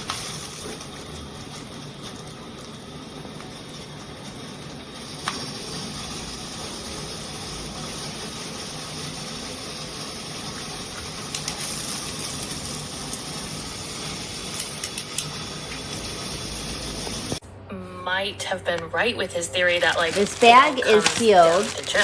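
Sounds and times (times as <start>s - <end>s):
shower spraying water: 0.0s - 17.4s.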